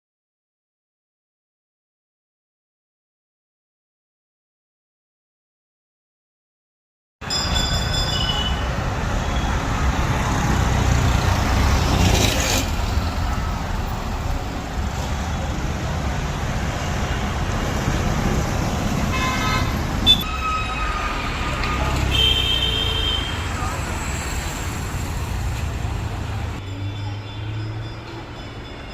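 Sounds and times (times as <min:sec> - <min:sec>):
road traffic rumble: 0:07.2 - 0:28.9
vehicle horn toots: 0:19.1 - 0:21.2, 0:22.0 - 0:23.4.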